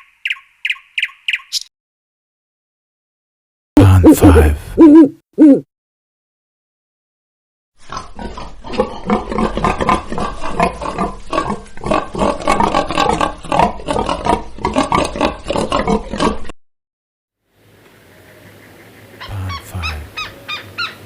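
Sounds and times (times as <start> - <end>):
pig grunting: 7.8 - 16.5.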